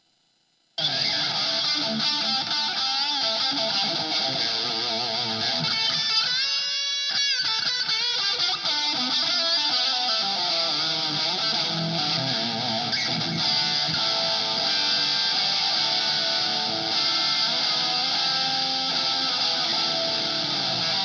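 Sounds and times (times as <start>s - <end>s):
distorted electric guitar: 0.8s - 21.0s.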